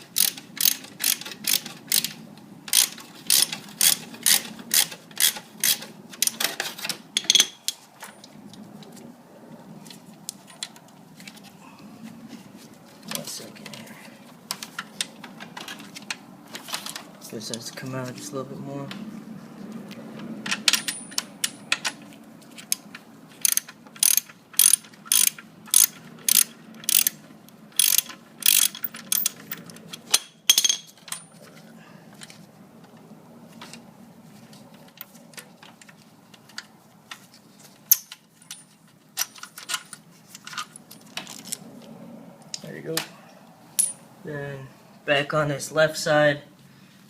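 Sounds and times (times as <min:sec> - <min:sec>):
ratchet wrench clicking: 0:00.1 - 0:02.1, 0:02.7 - 0:05.8, 0:23.4 - 0:27.2, 0:27.8 - 0:29.4.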